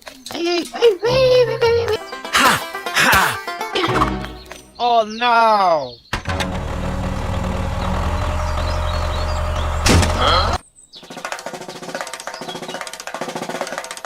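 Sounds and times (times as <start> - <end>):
light rhythmic percussive music: 1.0 - 4.8.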